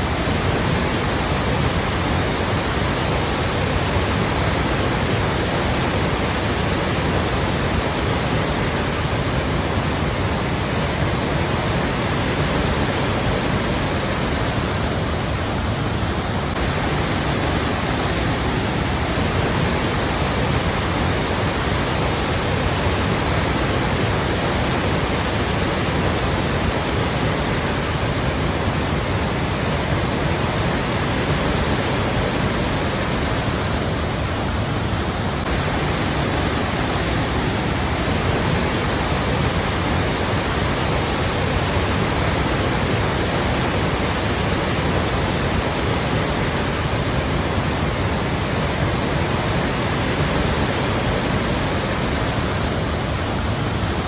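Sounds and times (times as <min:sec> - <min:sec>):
flowing water rushing: 0:00.0 - 0:54.0.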